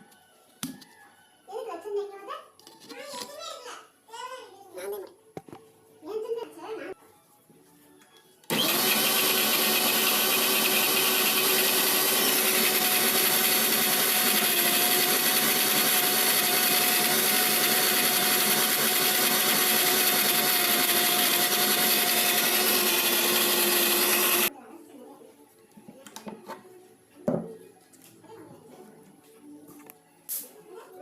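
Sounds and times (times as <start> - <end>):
mixer grinder motor whining: 8.4 - 24.5.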